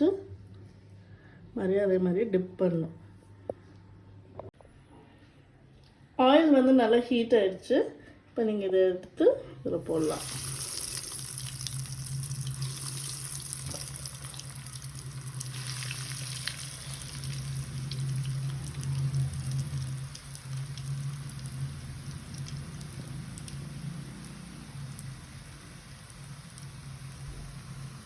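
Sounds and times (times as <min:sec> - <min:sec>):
food sizzling in hot oil: 0:09.9 - 0:28.0.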